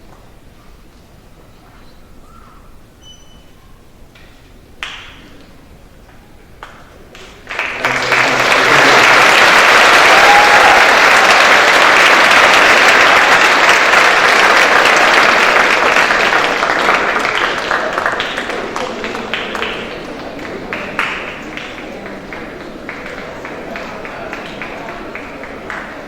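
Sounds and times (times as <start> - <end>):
audience applauding: 7.1 - 26.0.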